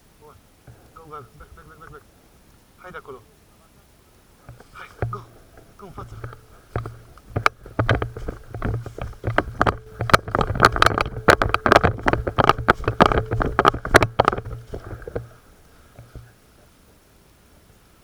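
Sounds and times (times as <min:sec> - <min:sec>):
hurried footsteps through undergrowth: 0:04.4 - 0:16.4
gear knocking and rubbing: 0:04.5 - 0:16.3.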